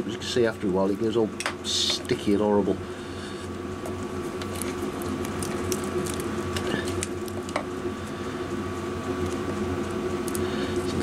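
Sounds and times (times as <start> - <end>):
steady low hum: 0.0 - 11.0
tape being peeled crackling: 3.8 - 8.2, 8.8 - 11.0.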